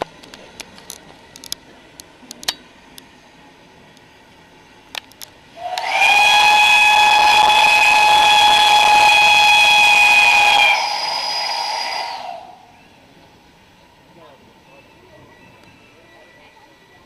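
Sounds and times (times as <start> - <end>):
steam locomotive whistle blast: 5.6 - 12.8.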